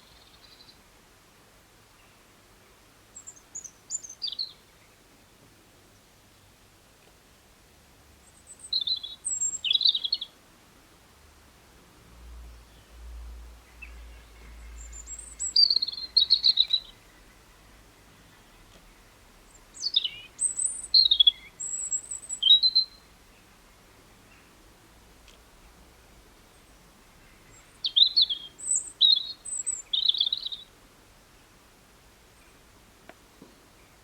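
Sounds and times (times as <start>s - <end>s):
songbird singing: 0.0s - 0.9s, 1.8s - 6.6s, 8.2s - 10.4s, 12.2s - 31.6s, 32.2s - 34.0s.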